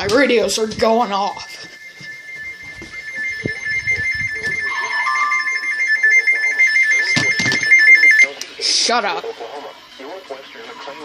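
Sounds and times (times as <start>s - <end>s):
lower alarm tone: 0.0s - 8.4s
two-tone warble alarm: 0.0s - 8.4s.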